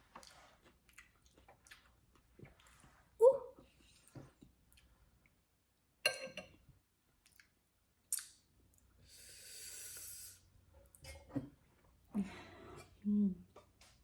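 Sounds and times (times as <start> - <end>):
wet mouth smack: 8.1 - 8.4
hissing suck of air: 9.1 - 10.4.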